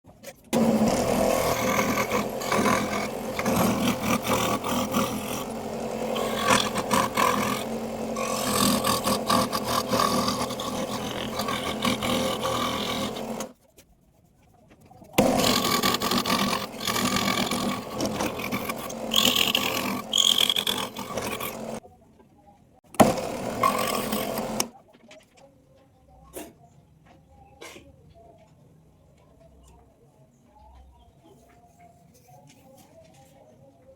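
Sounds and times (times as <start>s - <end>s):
power tool motor whining: 0.6s - 13.5s, 15.2s - 21.8s, 23.0s - 24.7s
scraping on wood: 0.6s - 13.6s, 15.2s - 21.8s, 23.0s - 24.7s.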